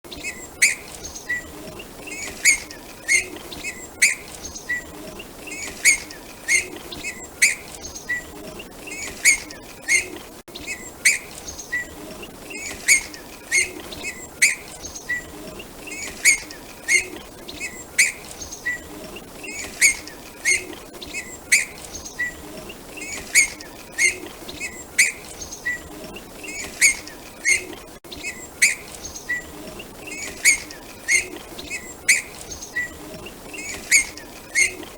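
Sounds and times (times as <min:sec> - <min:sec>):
finch chirping: 0:00.1 - 0:34.9.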